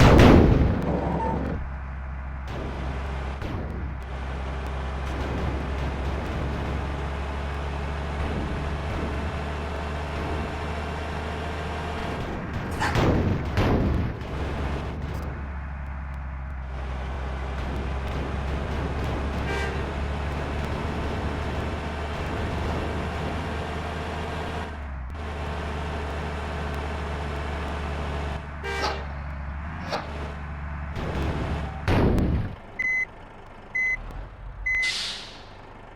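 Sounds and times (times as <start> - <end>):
heavy vehicle engine drone: 0.0 - 35.9
horn toots: 19.1 - 20.3, 28.6 - 29.3.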